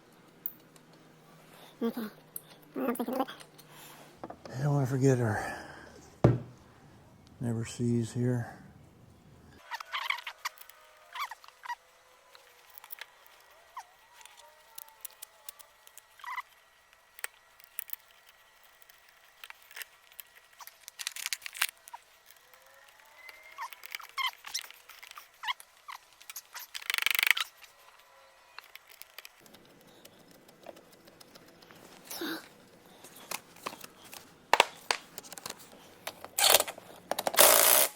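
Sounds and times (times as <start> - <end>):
metal parts clicking: 23.6 - 27.7.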